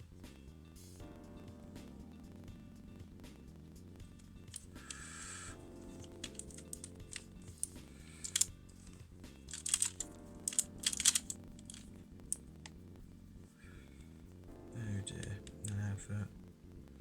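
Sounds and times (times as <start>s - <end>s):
background music: 0.0s - 17.0s
plastic puzzle clicking: 4.5s - 5.4s, 6.0s - 11.9s.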